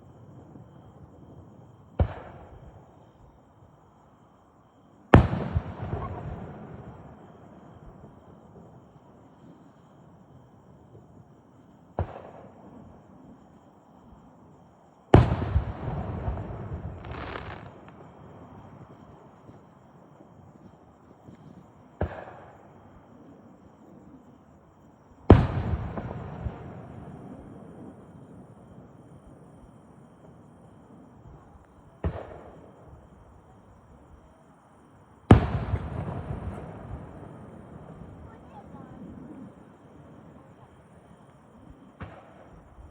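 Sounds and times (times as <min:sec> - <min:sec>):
fireworks bursting: 0:01.9 - 0:03.0, 0:05.1 - 0:08.2, 0:15.1 - 0:19.6, 0:20.2 - 0:22.9, 0:25.2 - 0:33.5, 0:35.2 - 0:42.9.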